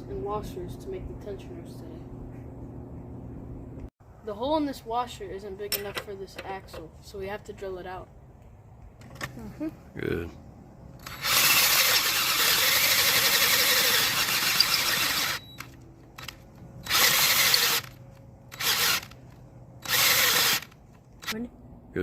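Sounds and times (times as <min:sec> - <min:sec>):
power drill boring metal: 0:11.0 - 0:15.6, 0:16.2 - 0:19.2, 0:19.8 - 0:21.4.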